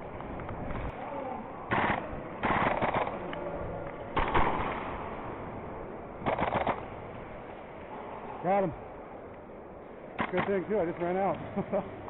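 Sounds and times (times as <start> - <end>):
airsoft gun bursts: 1.7 - 3.2, 6.2 - 6.8, 10.2 - 10.6.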